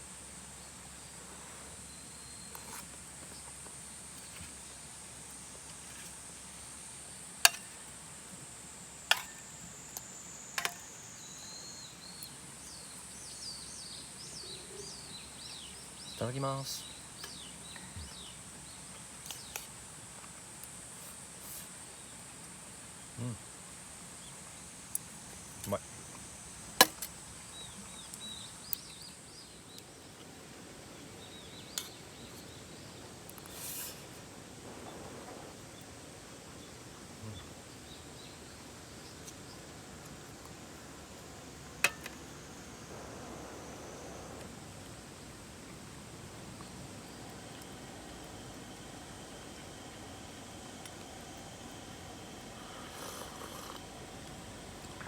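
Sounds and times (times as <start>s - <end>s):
faint outdoor background: 0.0s - 55.0s
bird chirping: 11.2s - 19.7s.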